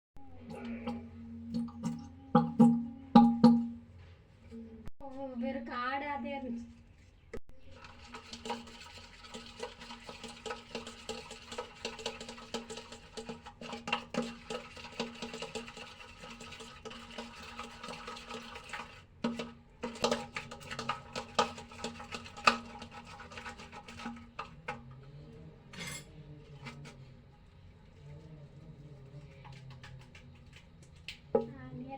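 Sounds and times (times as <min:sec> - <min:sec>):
slime being stirred in a bowl: 0:06.8 - 0:31.9.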